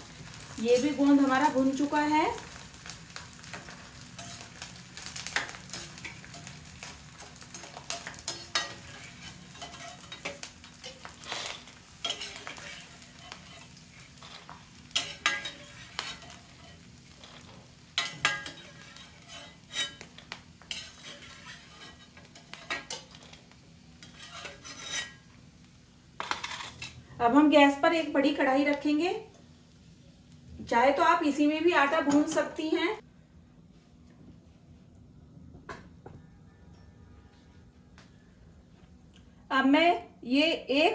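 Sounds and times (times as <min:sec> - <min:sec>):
gum frying in ghee sizzling: 0:00.0 - 0:33.0
spoon scraping a pan: 0:03.4 - 0:25.3, 0:26.2 - 0:27.0.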